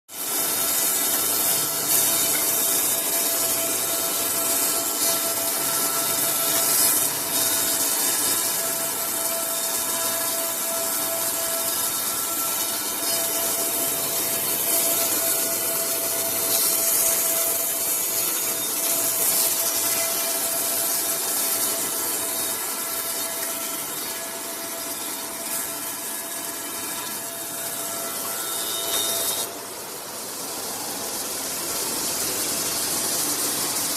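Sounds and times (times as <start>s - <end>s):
wood planer cutting timber: 0.1s - 29.6s.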